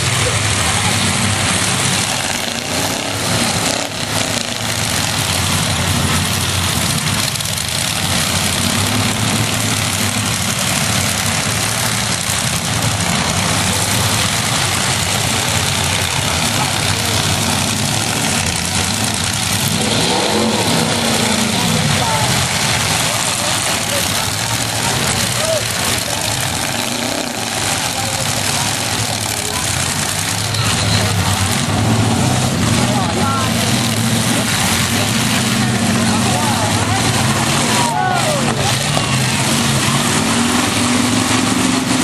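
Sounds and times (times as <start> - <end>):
truck engines revving: 0.0 - 42.0.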